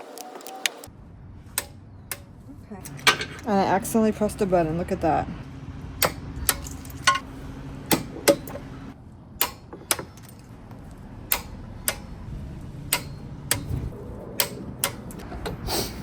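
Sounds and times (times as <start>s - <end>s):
tools clicking and tapping: 1.6s - 3.5s, 6.0s - 7.2s, 7.9s - 8.6s, 9.4s - 12.3s, 12.9s - 13.8s, 14.4s - 15.6s.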